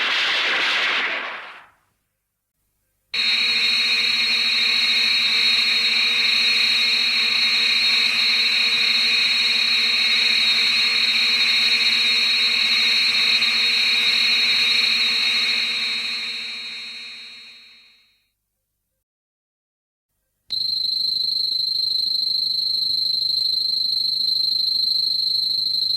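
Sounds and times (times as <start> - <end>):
synthetic hum with fluttering tone: 3.2 - 17.9.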